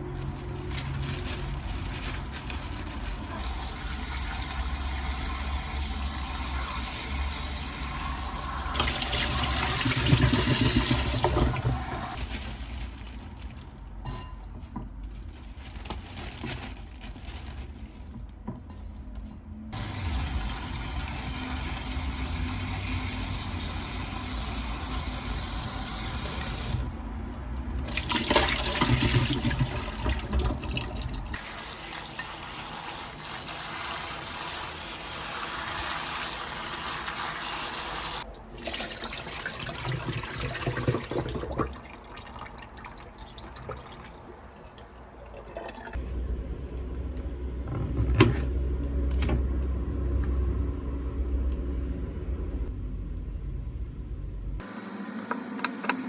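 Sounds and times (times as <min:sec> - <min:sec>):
tap water running into sink: 0:03.4 - 0:12.2, 0:27.8 - 0:44.2.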